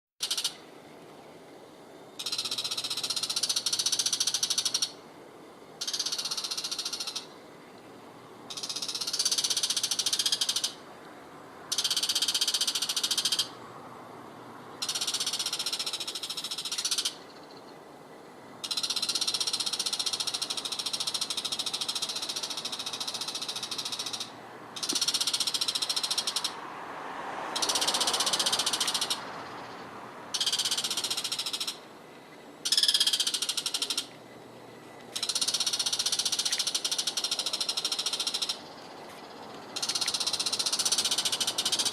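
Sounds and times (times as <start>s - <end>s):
bird rattling chatter call: 35.2s - 38.6s.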